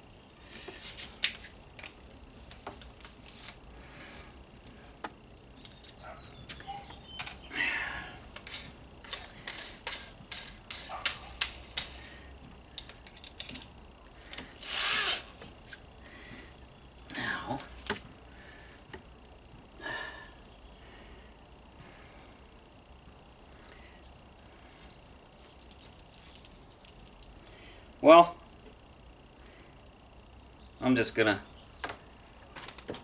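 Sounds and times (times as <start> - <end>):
metal parts clicking and tapping: 1.2 - 3.6, 5.6 - 7.5, 8.3 - 14.5.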